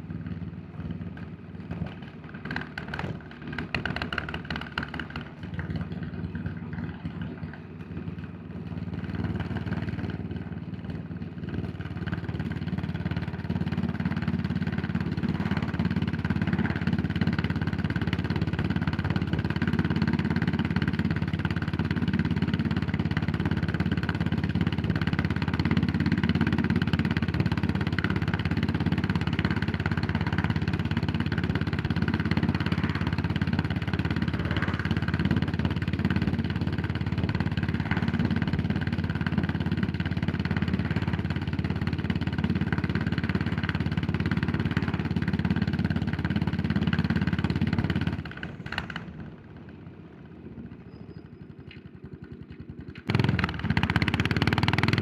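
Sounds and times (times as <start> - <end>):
motorcycle engine running: 0.0 - 55.0.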